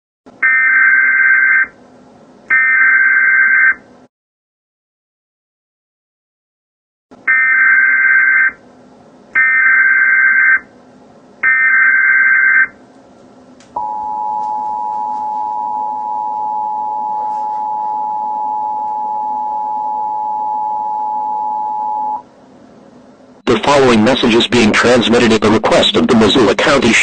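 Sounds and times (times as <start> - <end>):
two-tone attention signal: 13.8 - 22.2.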